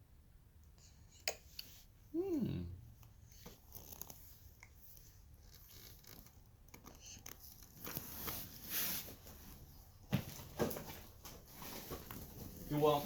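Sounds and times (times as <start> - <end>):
rustling: 3.3 - 13.0.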